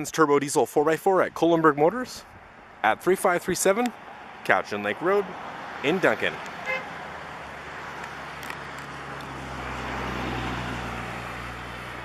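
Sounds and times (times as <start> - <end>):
vehicle engine humming: 3.7 - 12.0.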